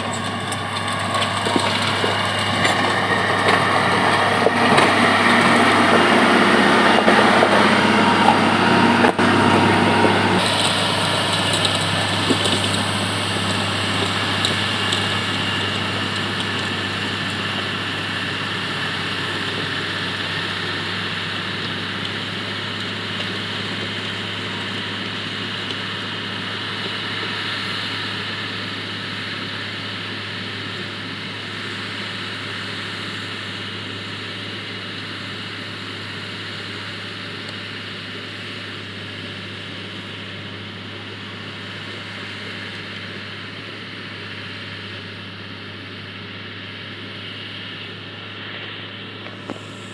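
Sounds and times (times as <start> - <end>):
motor grader diesel engine: 0.0 - 49.9.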